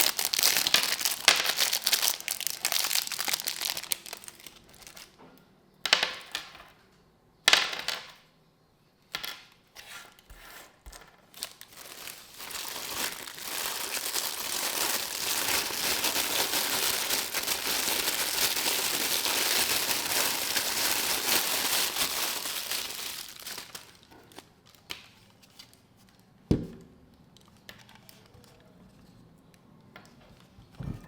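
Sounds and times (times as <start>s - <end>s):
packaging crinkling and rustling: 0.0s - 5.2s, 11.2s - 26.3s.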